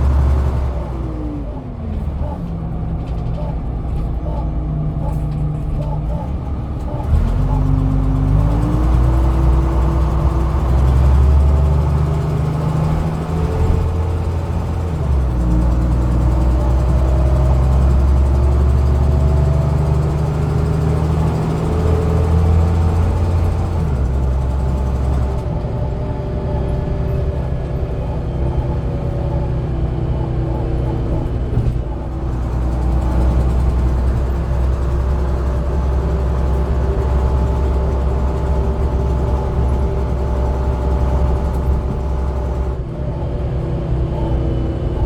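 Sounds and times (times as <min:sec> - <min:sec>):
bus engine running: 0:00.0 - 0:45.0.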